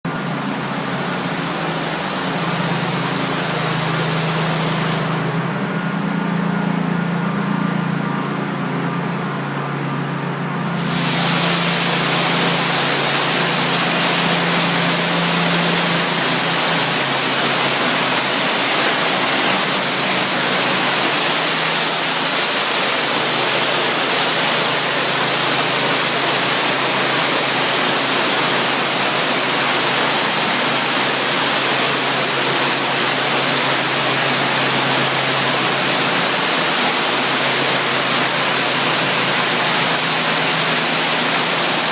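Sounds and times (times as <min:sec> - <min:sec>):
pressure washer engine running: 0:00.1 - 0:41.9
high-pressure water spray hiss: 0:00.2 - 0:05.2, 0:10.5 - 0:41.9.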